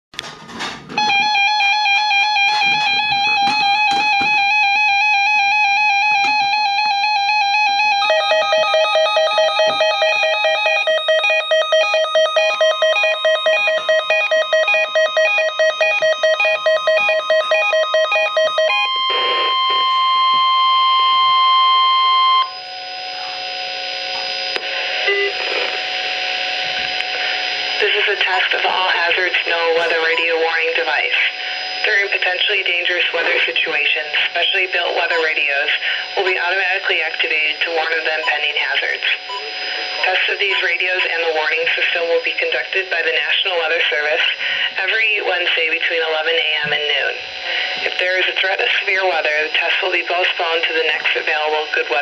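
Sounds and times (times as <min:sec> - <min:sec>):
loud steady alarm tone: 0:00.2 - 0:52.0
radio hiss: 0:23.0 - 0:52.0.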